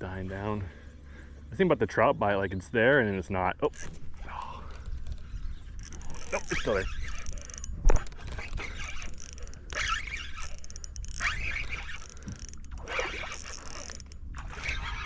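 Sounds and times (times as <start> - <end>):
fishing reel ratcheting: 3.7 - 4.0, 5.2 - 15.0
wind rumbling on microphone: 3.9 - 15.0.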